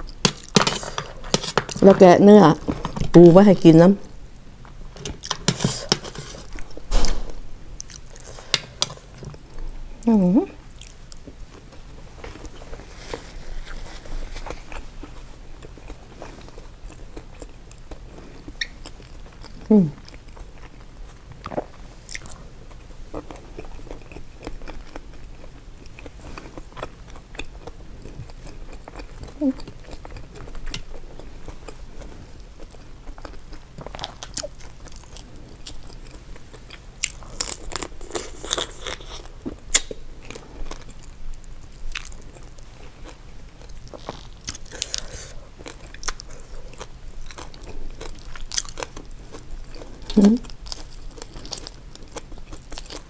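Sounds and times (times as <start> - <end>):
person chewing and biting: 13.7 - 53.0.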